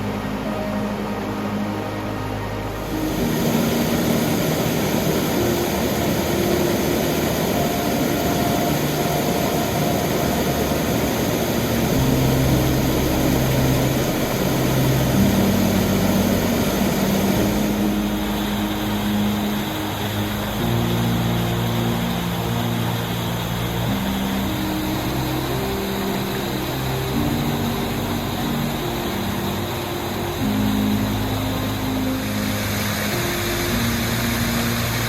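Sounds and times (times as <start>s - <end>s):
soft background music: 0.0s - 35.0s
waterfall rushing: 0.0s - 35.0s.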